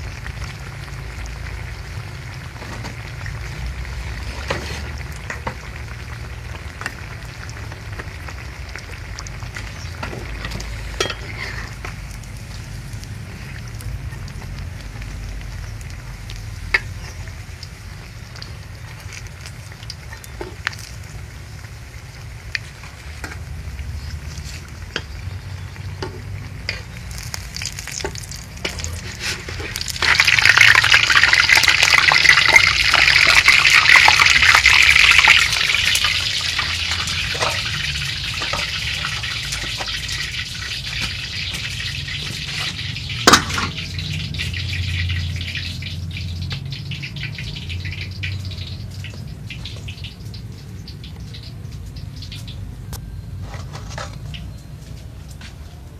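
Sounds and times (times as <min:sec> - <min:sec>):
food frying in hot oil: 0:00.0 - 0:55.4.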